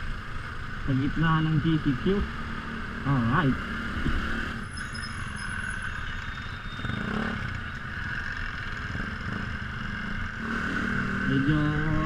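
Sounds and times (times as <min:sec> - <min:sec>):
motorcycle engine running: 0:05.9 - 0:12.0.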